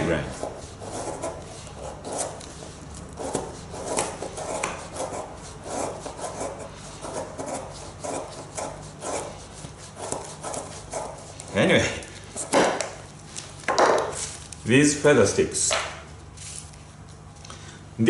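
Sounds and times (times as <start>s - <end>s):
hatchet scraping wood: 0.3s - 11.5s.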